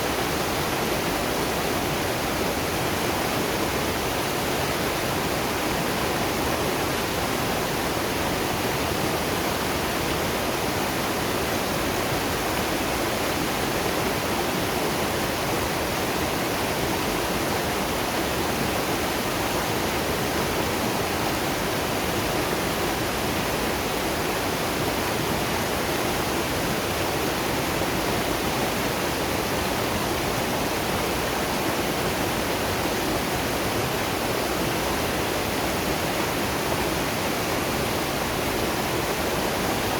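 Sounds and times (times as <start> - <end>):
waterfall and river rushing: 0.0 - 39.9.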